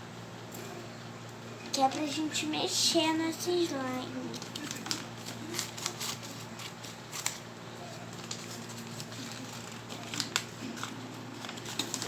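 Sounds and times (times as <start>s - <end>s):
plastic items clicking and rustling: 4.3s - 7.4s, 8.1s - 12.0s.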